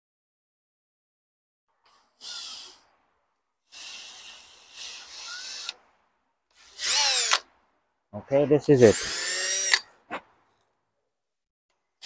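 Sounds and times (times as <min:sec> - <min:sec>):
power drill running: 0:03.7 - 0:05.8, 0:06.6 - 0:07.4, 0:08.9 - 0:09.8.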